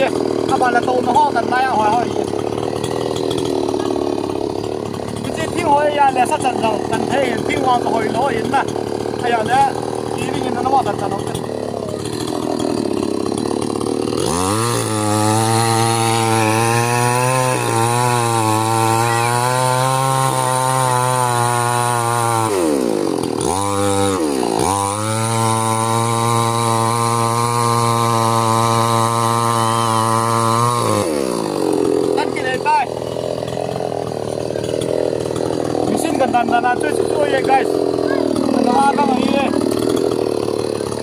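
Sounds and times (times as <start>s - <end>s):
chainsaw engine revving: 0.0s - 41.0s.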